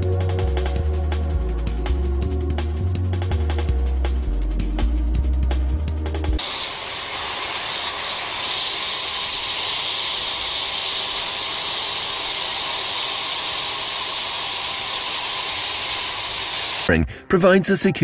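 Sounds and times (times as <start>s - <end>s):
hot-air welding gun hissing: 6.4s - 16.9s.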